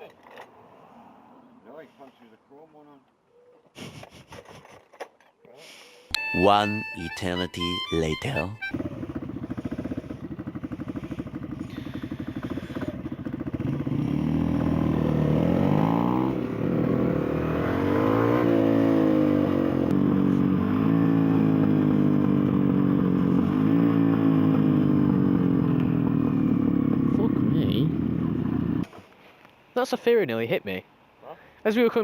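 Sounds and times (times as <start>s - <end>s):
motorcycle engine idling and revving: 8.6s - 29.0s.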